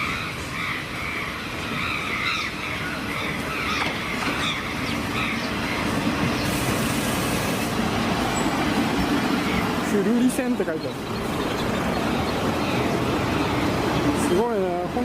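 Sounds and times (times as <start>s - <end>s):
train rumbling on rails: 0.0s - 15.0s
rush of hiss: 6.4s - 7.9s.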